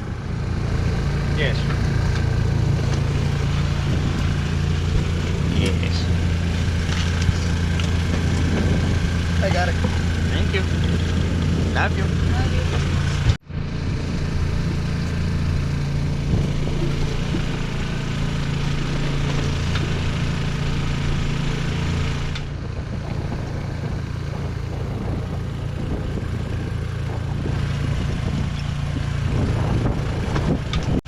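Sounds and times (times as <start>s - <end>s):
boat motor humming: 0.0s - 31.0s
wind rushing: 1.8s - 6.9s, 7.5s - 13.4s.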